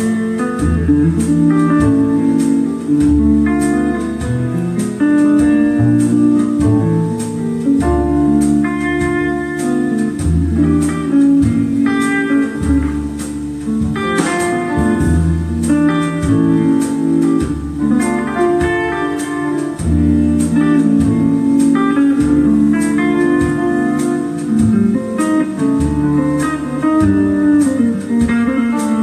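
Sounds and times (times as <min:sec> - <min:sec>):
music with guitar and bass: 0:00.0 - 0:29.0.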